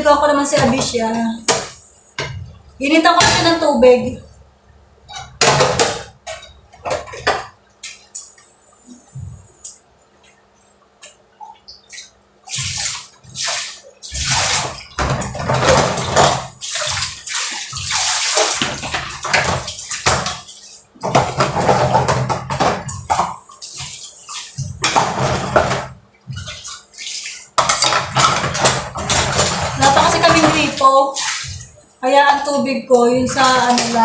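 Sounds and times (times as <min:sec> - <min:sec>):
water pouring and splashing: 0:11.0 - 0:34.0.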